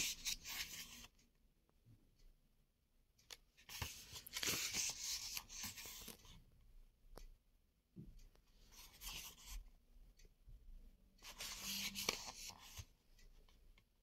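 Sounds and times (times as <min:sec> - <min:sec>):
book pages rustling: 0:00.0 - 0:01.1, 0:03.3 - 0:06.4, 0:08.4 - 0:09.6, 0:11.2 - 0:13.9
page clicks: 0:03.3 - 0:06.3, 0:11.2 - 0:12.8.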